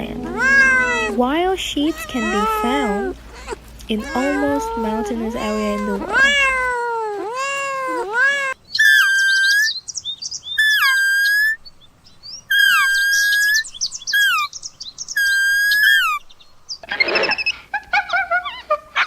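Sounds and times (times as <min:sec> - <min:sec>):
cat meowing: 0:00.0 - 0:01.2, 0:01.8 - 0:08.6.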